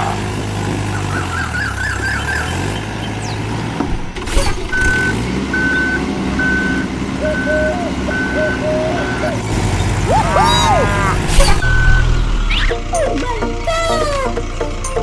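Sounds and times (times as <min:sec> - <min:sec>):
vehicle engine humming: 0:00.0 - 0:15.0
reversing alarm beeping: 0:04.4 - 0:13.0.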